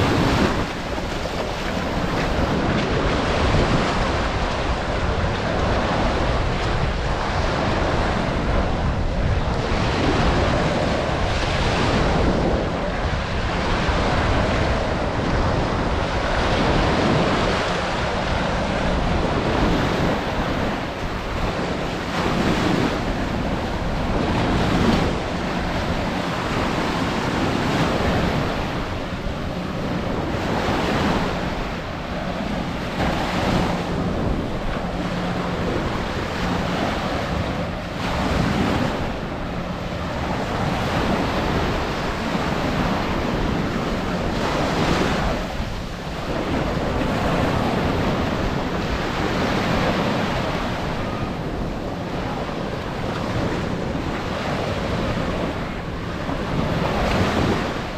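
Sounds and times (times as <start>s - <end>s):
surf washing onto sandy beach: 0.0s - 57.9s
wind buffeting microphone: 0.0s - 57.9s.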